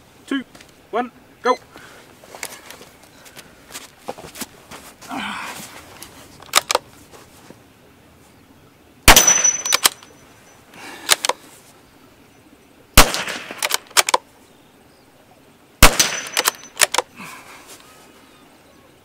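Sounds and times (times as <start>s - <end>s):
rifle bolt clicks: 6.5s - 6.8s, 13.1s - 14.2s, 15.8s - 17.1s
rifle shots: 9.1s - 10.0s, 13.0s - 14.2s, 15.8s - 17.0s.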